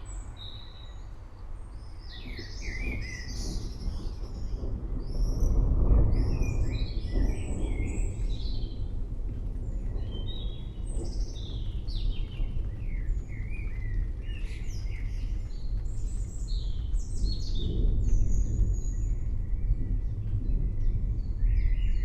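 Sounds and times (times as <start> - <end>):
forest birds chirping: 0.0 - 22.0
steady low rumble: 0.0 - 22.0.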